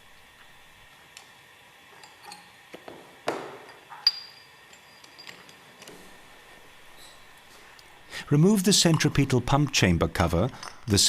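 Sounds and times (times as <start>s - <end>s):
metal parts knocking and clinking: 1.9s - 6.0s
high metallic ring: 3.5s - 5.7s.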